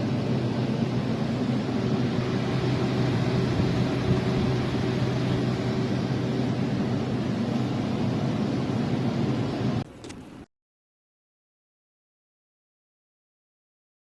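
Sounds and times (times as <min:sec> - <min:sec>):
humidifier fan running: 0:00.0 - 0:10.4.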